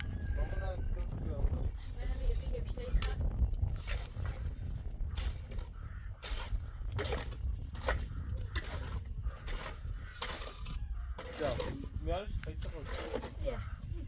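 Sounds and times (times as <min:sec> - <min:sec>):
low rumble: 0:00.0 - 0:11.2
scraping strokes: 0:01.9 - 0:14.0.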